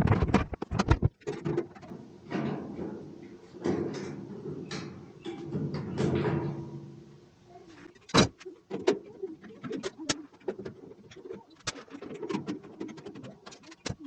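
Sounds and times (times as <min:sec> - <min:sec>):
tools and screws clicking and clattering: 0:08.0 - 0:14.0.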